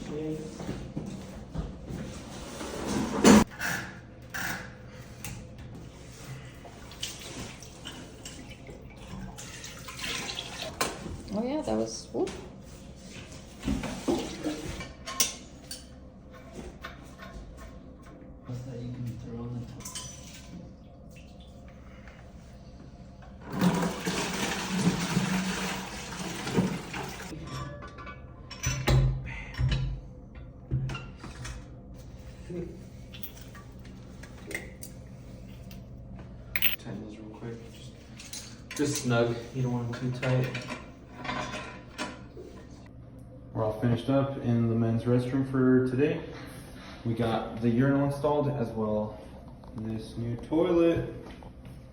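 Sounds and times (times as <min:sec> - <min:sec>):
toilet flushing: 0:05.8 - 0:11.4, 0:13.2 - 0:15.1, 0:23.2 - 0:27.5.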